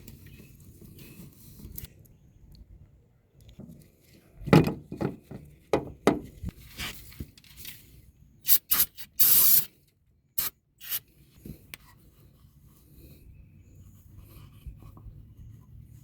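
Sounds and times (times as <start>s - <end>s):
short hissing bursts: 8.4s - 9.7s, 10.4s - 11.0s.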